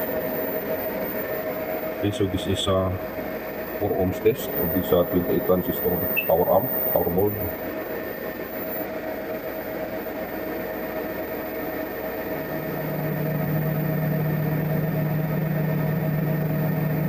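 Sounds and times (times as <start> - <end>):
electrical hum with whine: 0.0 - 17.0
strong low hum: 12.4 - 17.0.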